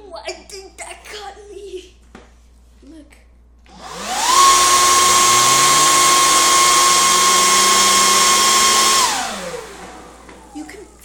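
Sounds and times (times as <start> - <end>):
small electric motor whining: 3.7 - 11.0.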